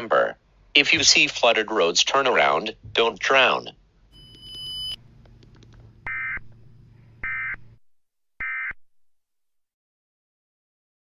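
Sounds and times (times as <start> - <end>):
low hum: 3.8 - 8.0
brief high tone: 4.2 - 5.0
digital data tone bursts: 7.2 - 7.6.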